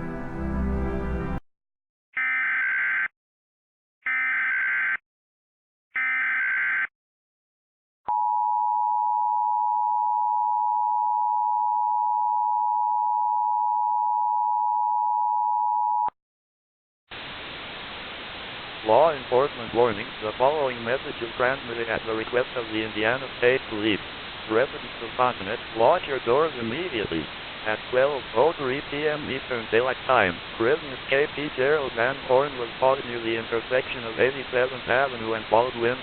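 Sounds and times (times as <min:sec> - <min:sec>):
faint hiss: 0:17.2 - 0:36.0.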